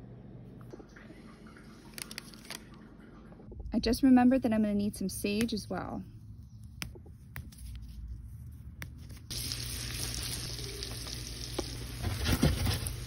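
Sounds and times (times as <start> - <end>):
food sizzling in a frying pan: 9.3 - 13.0.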